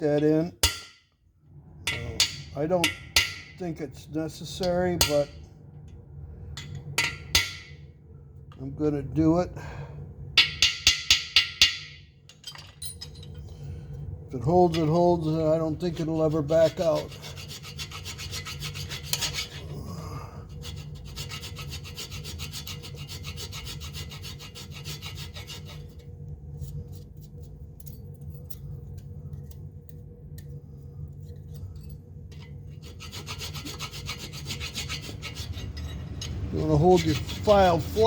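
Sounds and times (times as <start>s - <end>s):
hand file rasping on metal: 15.9s - 19.7s, 20.5s - 26.0s, 32.7s - 38.0s.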